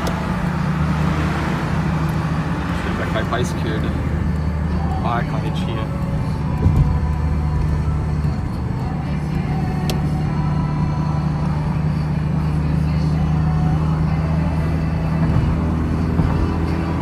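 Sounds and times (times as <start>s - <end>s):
car engine drone: 0.0s - 17.0s
tyre noise: 14.2s - 17.0s.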